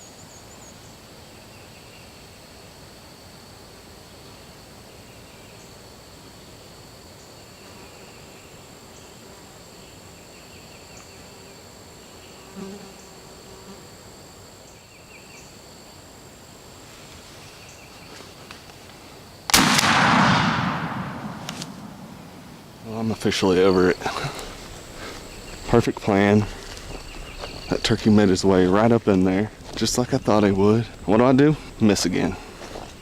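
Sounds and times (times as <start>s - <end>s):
shotgun shot with echo: 19.5s - 22.8s.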